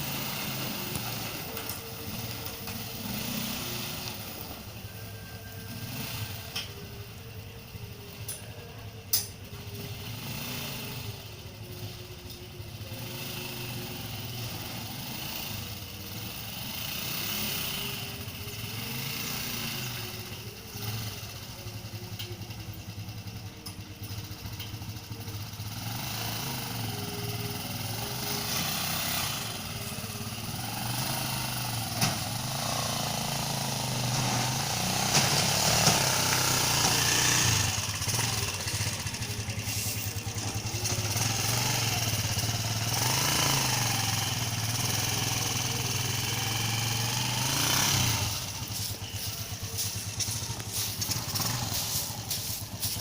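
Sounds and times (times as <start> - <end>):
farm machine engine running: 0.0 - 53.0.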